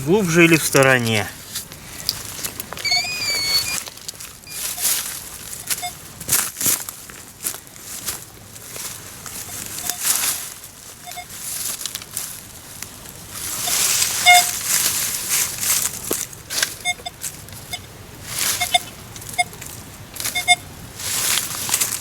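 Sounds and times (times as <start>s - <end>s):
scraping and rustling of soil: 0.5s - 22.0s
metal detector beeping: 2.7s - 5.0s, 5.6s - 6.0s, 11.0s - 11.3s, 16.8s - 17.8s, 18.6s - 19.6s, 20.3s - 20.7s.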